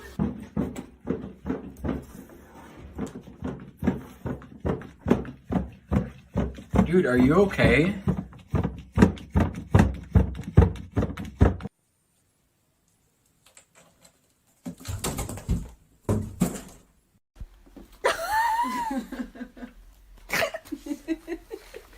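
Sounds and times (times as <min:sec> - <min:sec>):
knocks and thumps: 0:00.1 - 0:11.7, 0:14.6 - 0:16.9.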